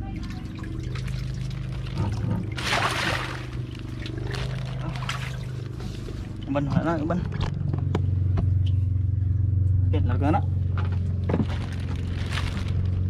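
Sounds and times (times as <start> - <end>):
water pouring or splashing: 0.0 - 5.8
steady low hum: 0.0 - 13.0.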